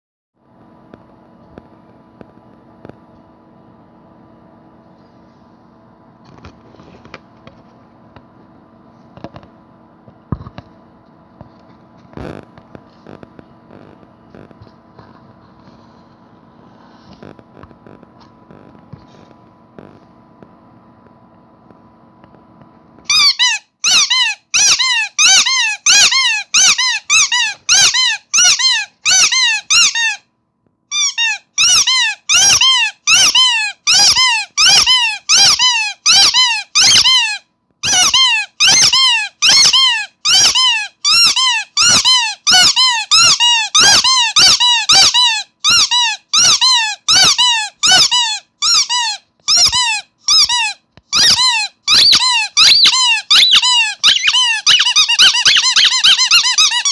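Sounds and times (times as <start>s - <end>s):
squeaky toy squeaking: 23.1s - 30.2s, 30.9s - 56.9s.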